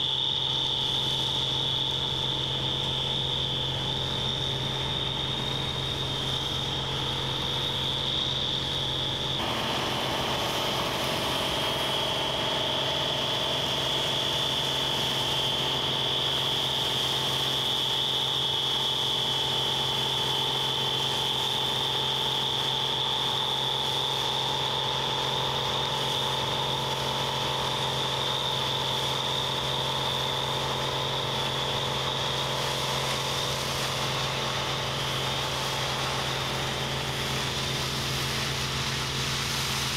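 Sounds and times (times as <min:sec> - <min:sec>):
combine harvester whining: 0:00.0 - 0:18.0.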